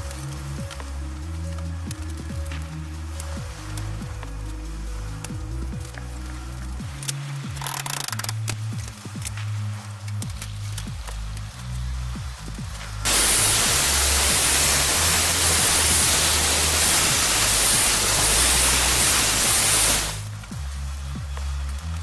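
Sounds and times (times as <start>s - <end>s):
background music with bass line: 0.0s - 22.0s
loud steady hiss: 13.0s - 20.6s.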